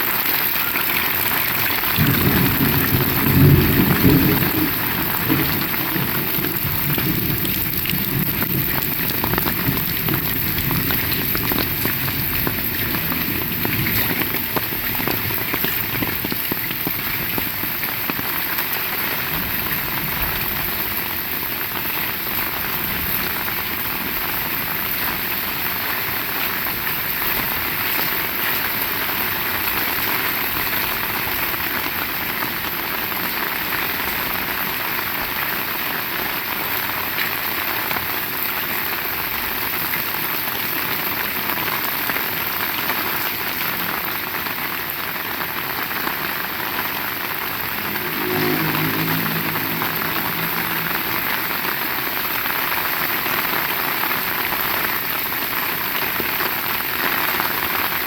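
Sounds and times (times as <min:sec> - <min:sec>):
heavy rain: 0:00.0 - 0:58.0
thunder rumbling: 0:01.3 - 0:18.5, 0:46.7 - 0:54.0.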